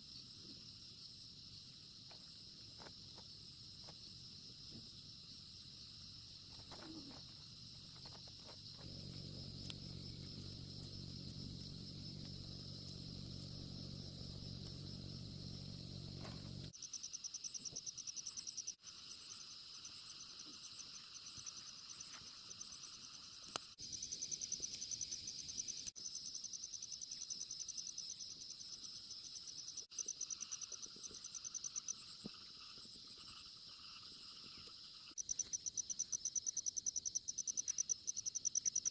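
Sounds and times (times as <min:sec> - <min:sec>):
insects chirring: 0:00.0 - 0:38.9
low steady rumble: 0:08.8 - 0:16.7.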